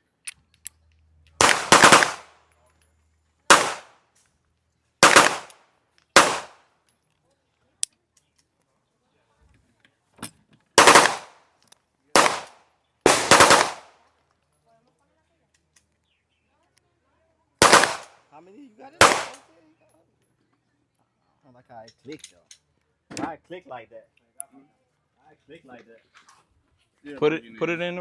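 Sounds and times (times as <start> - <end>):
gunshots with echo: 1.4 - 2.3, 3.5 - 3.9, 5.0 - 5.5, 6.2 - 6.6, 10.8 - 11.3, 12.2 - 12.5, 13.1 - 13.9, 17.6 - 18.1, 19.0 - 19.4.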